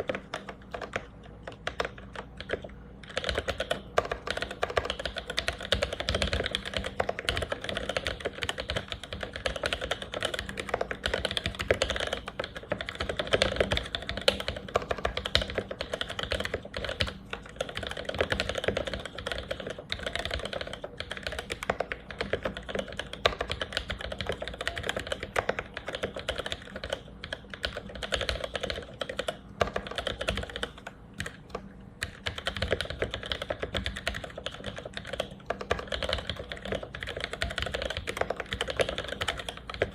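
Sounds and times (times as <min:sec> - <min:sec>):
fast mechanical keyboard typing: 0:00.0 - 0:39.9.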